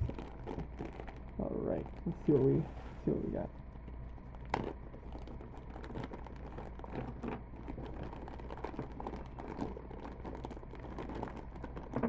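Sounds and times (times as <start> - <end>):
plastic bag rustling: 0.0 - 1.3
steady low hum: 0.0 - 12.0.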